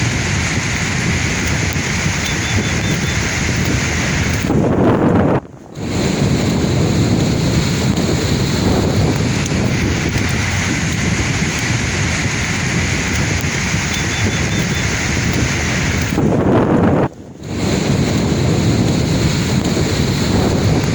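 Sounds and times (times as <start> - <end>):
sea waves breaking: 0.0 - 20.9
wind buffeting microphone: 0.0 - 20.9.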